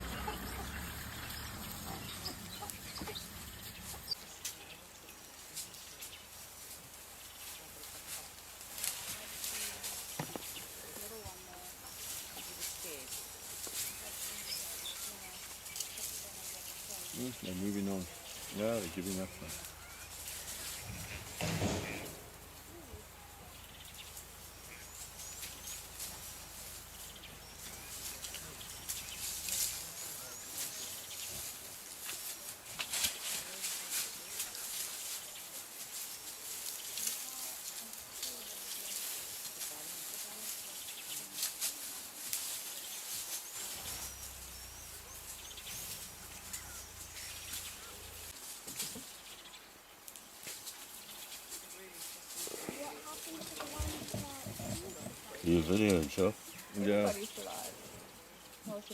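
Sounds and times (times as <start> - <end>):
faint bird chirps: 42.8 - 48.3.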